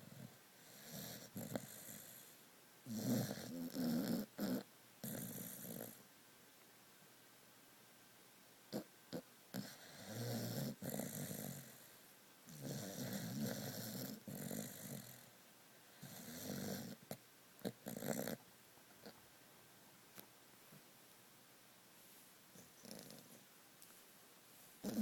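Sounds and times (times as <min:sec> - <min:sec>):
pet snoring: 0:00.0 - 0:06.0, 0:08.7 - 0:15.4, 0:16.0 - 0:18.4, 0:22.6 - 0:23.4, 0:24.8 - 0:25.0.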